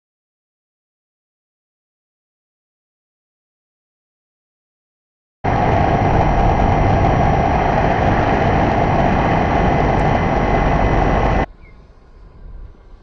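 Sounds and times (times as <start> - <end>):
model airplane motor and propeller: 5.5 - 11.5.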